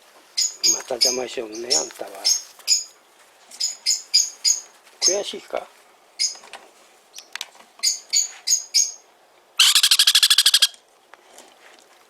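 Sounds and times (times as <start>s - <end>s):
parrot chicks chirping: 7.8s - 9.0s, 9.6s - 10.8s.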